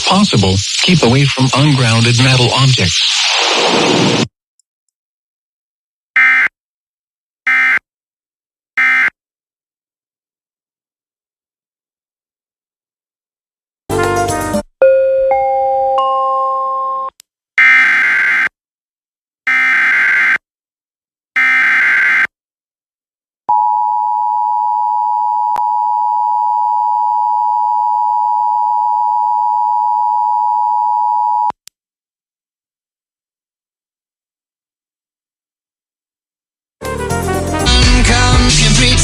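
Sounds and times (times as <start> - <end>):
warbling digital data bursts: 0.0 - 4.3.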